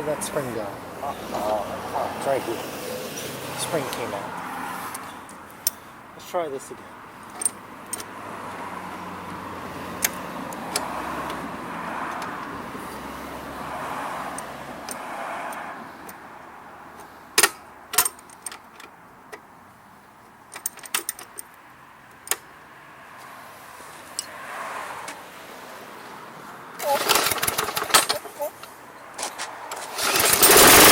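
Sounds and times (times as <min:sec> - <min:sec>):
metallic clinks and rattles: 0:07.3 - 0:08.1
mower engine cranking: 0:26.8 - 0:30.9.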